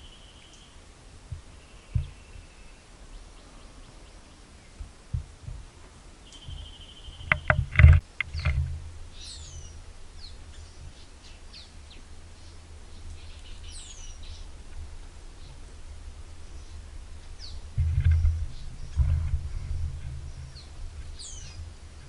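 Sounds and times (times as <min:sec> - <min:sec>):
steady background rumble: 0:00.0 - 0:22.0
low thud: 0:01.3 - 0:02.2, 0:04.8 - 0:05.7, 0:17.4 - 0:22.0
birds whistling falling notes: 0:06.2 - 0:07.5, 0:16.5 - 0:22.0.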